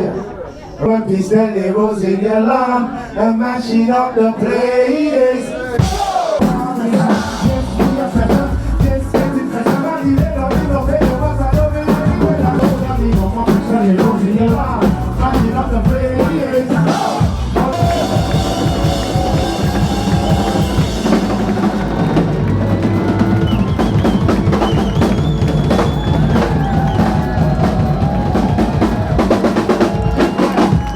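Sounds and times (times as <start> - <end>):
drum kit beat: 5.8 - 30.9
bass: 7.2 - 30.9
horns with trombone: 16.9 - 26.1.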